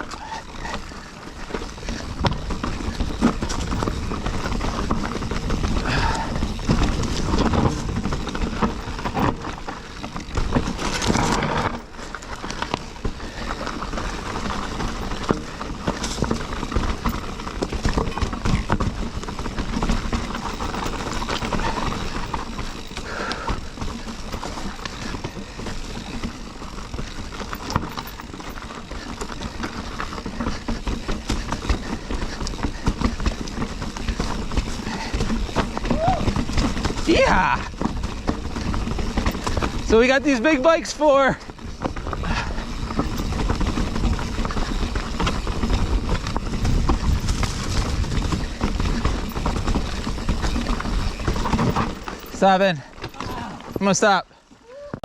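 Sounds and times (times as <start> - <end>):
bike knocking and rattling: 0.0 - 55.0
tyres rumbling on trail: 0.0 - 55.0.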